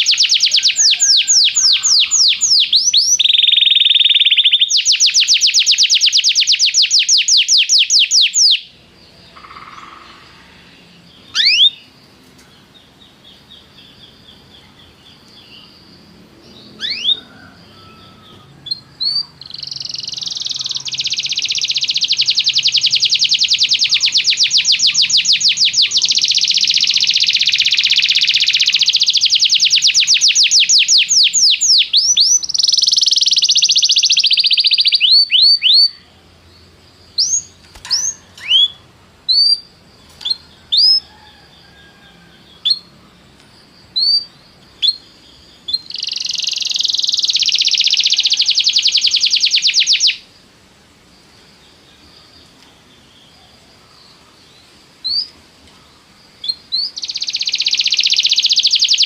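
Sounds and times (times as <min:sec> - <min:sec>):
canary trilling: 0:00.0 - 0:08.7, 0:09.3 - 0:10.5, 0:11.2 - 0:11.8, 0:16.8 - 0:36.1, 0:45.7 - 0:50.2, 0:56.5 - 0:59.0.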